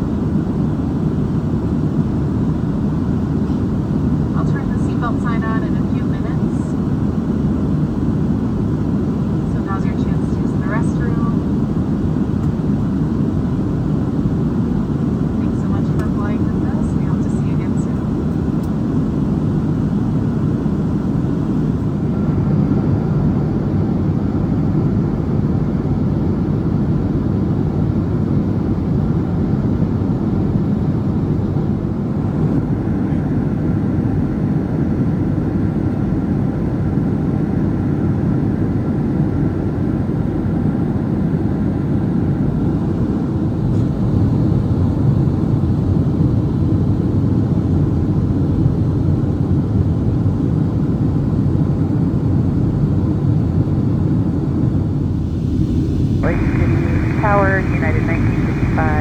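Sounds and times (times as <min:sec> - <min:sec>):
airplane cabin noise: 0:00.0 - 0:26.0, 0:54.6 - 0:59.0.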